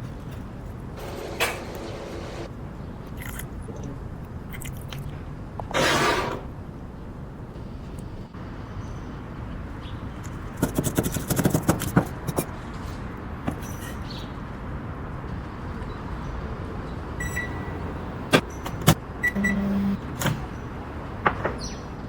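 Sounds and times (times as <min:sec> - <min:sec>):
short scraping: 0:05.7 - 0:06.5
steady low hum: 0:19.2 - 0:20.8.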